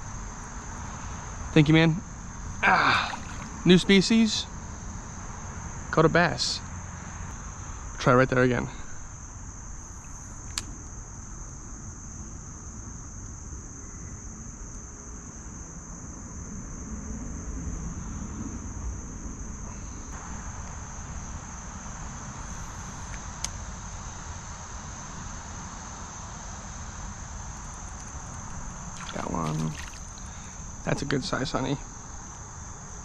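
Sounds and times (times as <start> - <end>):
insects trilling: 0.0 - 33.0
small clicks: 10.0 - 10.7.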